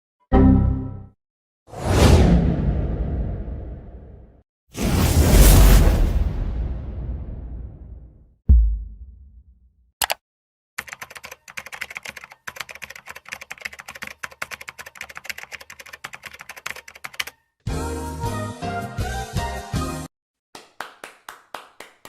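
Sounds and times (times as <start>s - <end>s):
keyboard typing clicks: 10.8s - 17.4s.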